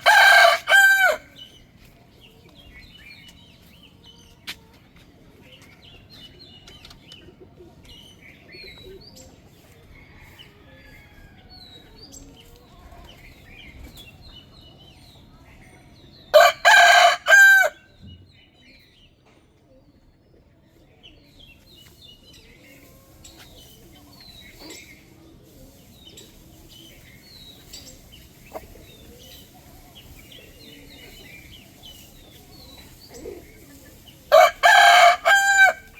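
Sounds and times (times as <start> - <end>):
rooster crowing: 0.0 - 1.3, 16.3 - 17.8, 34.3 - 35.9.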